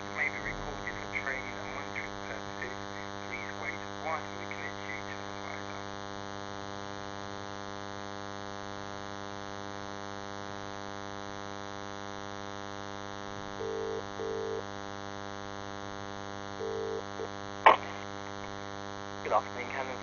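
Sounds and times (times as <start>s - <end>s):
electrical hum on phone line: 0.0s - 20.0s
double-pulse phone ringing tone: 13.6s - 14.6s, 16.6s - 17.3s.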